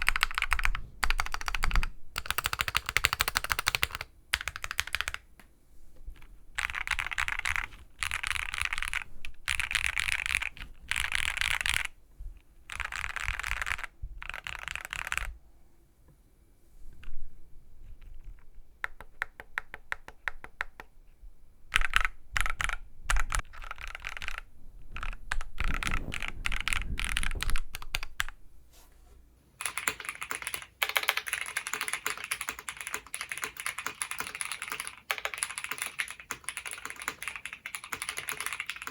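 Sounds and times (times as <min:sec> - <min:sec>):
mechanical keyboard typing: 0:00.0 - 0:05.3, 0:06.6 - 0:12.0, 0:12.7 - 0:15.4, 0:18.2 - 0:20.9, 0:21.7 - 0:28.4, 0:29.6 - 0:38.9.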